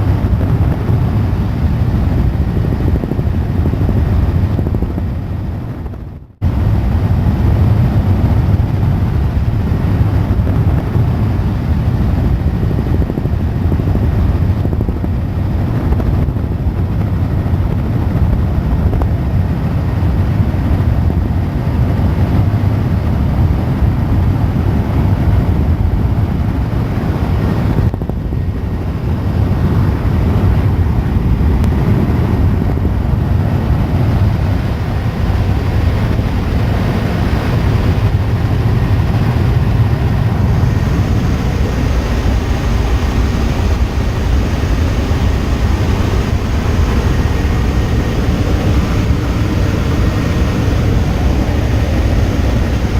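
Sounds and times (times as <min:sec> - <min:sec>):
helicopter rotor and engine drone: 0:00.0 - 0:52.9.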